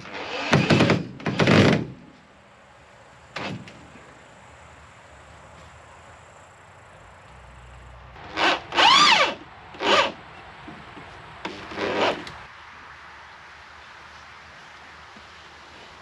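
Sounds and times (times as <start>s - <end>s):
hand tool scraping wood with squeal: 8.3s - 10.2s, 11.5s - 12.4s.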